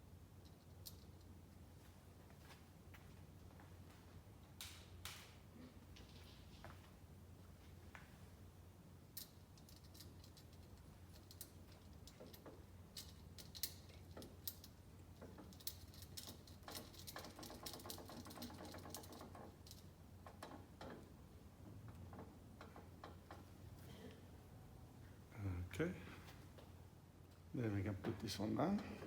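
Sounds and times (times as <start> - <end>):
small metal parts clicking: 0.4 - 1.3, 9.1 - 21.0.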